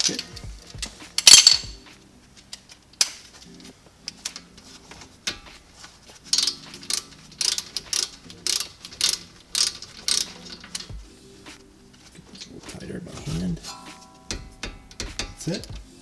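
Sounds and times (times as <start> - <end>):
ratchet wrench clicking: 0.0 - 1.8, 6.2 - 11.0.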